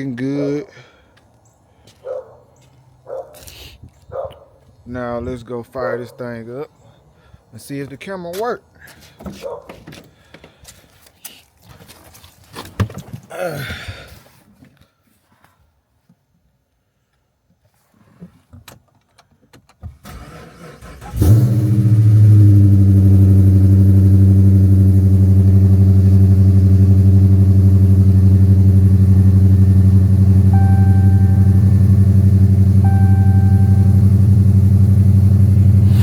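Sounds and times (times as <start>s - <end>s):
car engine starting and idling: 19.8s - 36.0s
short electronic beep: 30.5s - 31.8s, 32.8s - 34.2s.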